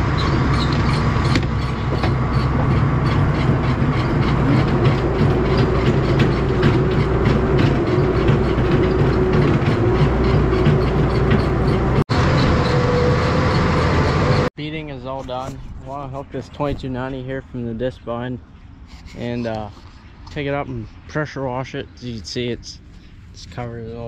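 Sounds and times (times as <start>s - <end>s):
loud metallic rattling: 0.0s - 14.5s
tractor engine drone: 0.0s - 24.0s.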